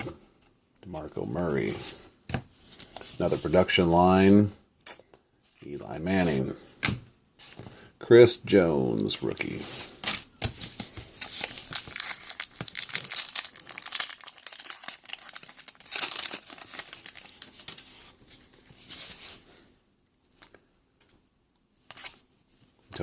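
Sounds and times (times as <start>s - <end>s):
wrapper tearing and crinkling: 11.3s - 17.9s.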